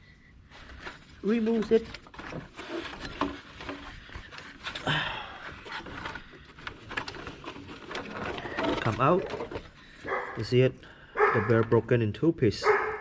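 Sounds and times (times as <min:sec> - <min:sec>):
belt rubbing and scraping: 0:00.5 - 0:04.9.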